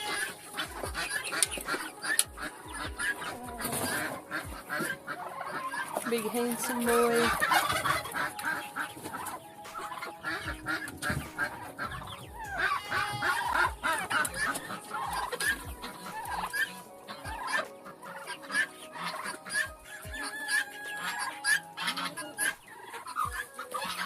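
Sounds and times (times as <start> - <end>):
chickens clucking: 0.0 - 24.0.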